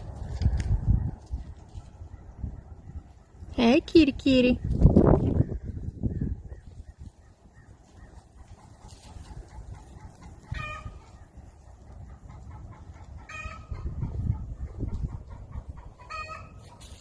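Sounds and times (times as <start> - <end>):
chickens squawking: 5.3 - 17.0.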